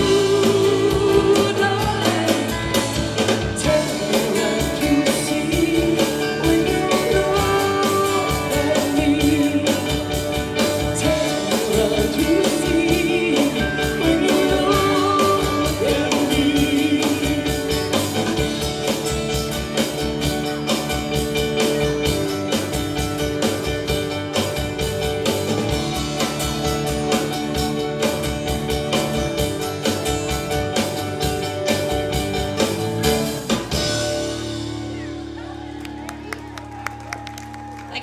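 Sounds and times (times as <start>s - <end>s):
woman singing lead: 0.0s - 18.6s
live country band playing: 0.0s - 38.0s.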